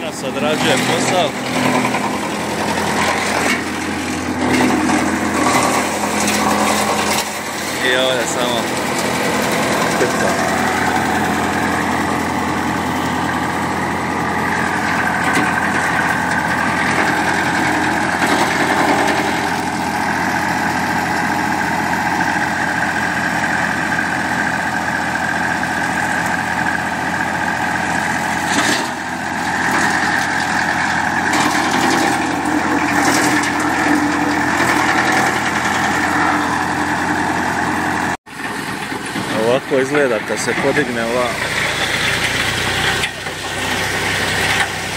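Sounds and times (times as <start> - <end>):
branches crackling and crunching: 0.0 - 23.1, 27.5 - 37.8
wood chipper humming: 0.0 - 44.9.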